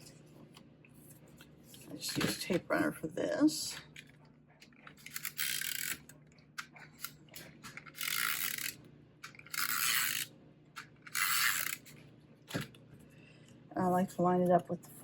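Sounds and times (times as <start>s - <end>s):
tape runner rasping on card: 4.9s - 6.1s, 6.9s - 12.0s.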